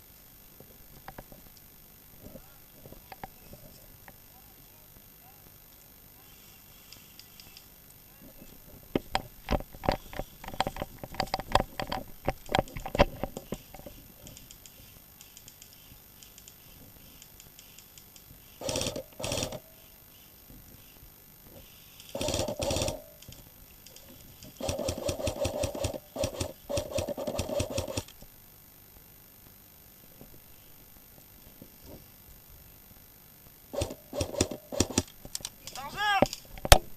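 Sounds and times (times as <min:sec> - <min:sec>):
sharp irregular clicks and knocks: 0:08.9 - 0:19.6, 0:21.6 - 0:28.3, 0:33.8 - 0:36.9
airsoft guns firing bursts: 0:22.2 - 0:23.1, 0:24.6 - 0:28.1, 0:33.8 - 0:35.1.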